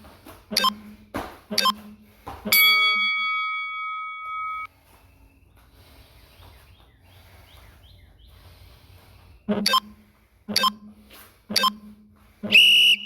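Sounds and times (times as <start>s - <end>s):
short thuds: 0.0s - 2.6s
electronic bell-like chime: 2.5s - 4.7s.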